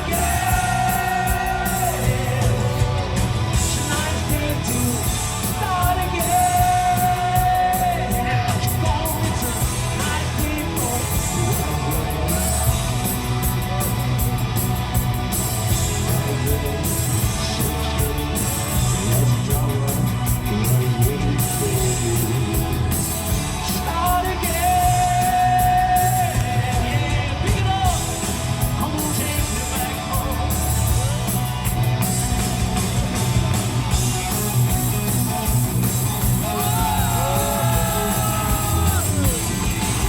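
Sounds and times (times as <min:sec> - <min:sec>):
person singing: 0:00.0 - 0:13.2, 0:15.8 - 0:23.1, 0:23.7 - 0:28.2, 0:34.2 - 0:40.0
live hard rock band: 0:00.0 - 0:40.0.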